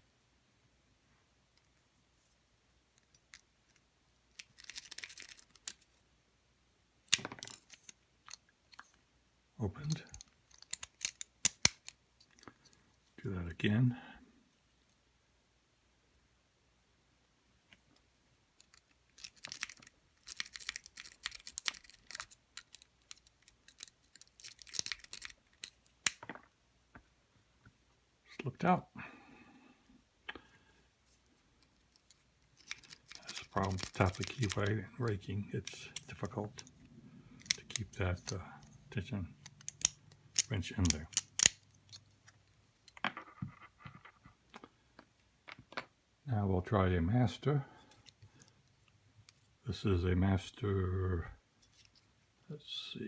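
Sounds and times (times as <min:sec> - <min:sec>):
lock pick scraping in padlock: 0:04.3 - 0:05.8, 0:10.1 - 0:12.0, 0:18.6 - 0:26.2, 0:31.8 - 0:36.7, 0:37.4 - 0:38.8, 0:39.4 - 0:43.0
sharp metal clicks: 0:10.1 - 0:12.0, 0:39.4 - 0:42.0.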